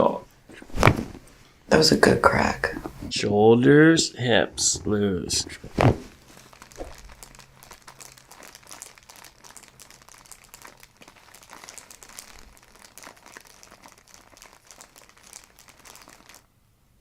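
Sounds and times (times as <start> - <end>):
crinkling on treatment table: 0.5 - 3.1, 5.5 - 16.5.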